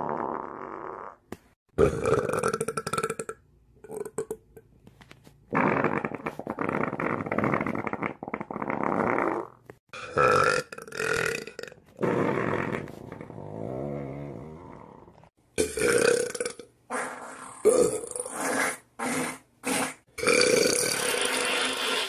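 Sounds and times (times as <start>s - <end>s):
person burping: 0.0s - 4.5s, 5.5s - 15.0s, 15.6s - 16.7s, 17.6s - 18.4s, 19.0s - 21.5s.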